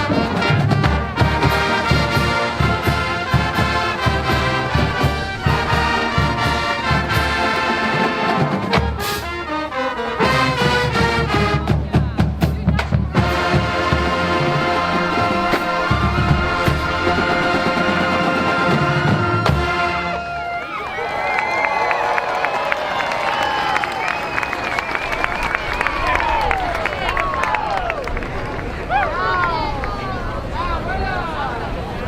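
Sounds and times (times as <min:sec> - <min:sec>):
drum beat: 0:00.0 - 0:09.4, 0:10.3 - 0:20.0
marching band brass tune: 0:00.0 - 0:21.0.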